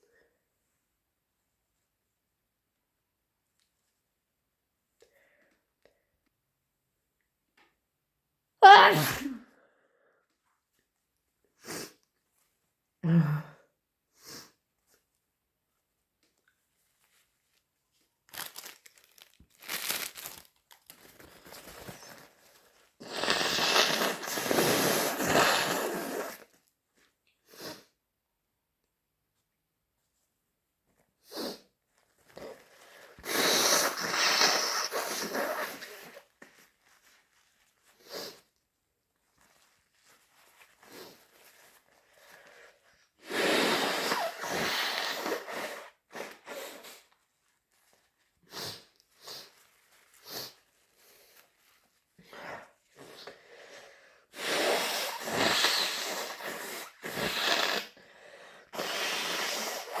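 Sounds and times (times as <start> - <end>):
person sneezing loudly: 8.6 - 9.5
sniffs and breaths: 21.0 - 26.6, 31.2 - 38.6, 39.4 - 47.2, 47.9 - 60.0.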